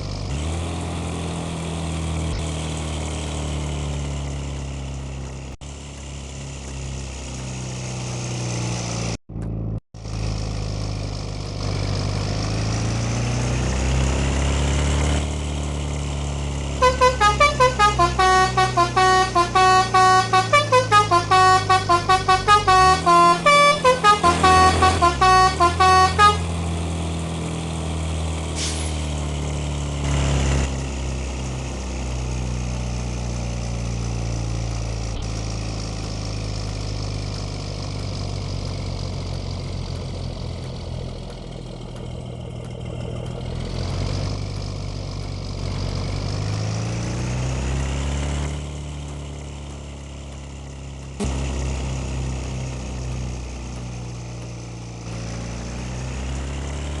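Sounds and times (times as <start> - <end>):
bus engine running: 0.0 - 57.0
musical air horns tune: 16.8 - 26.5.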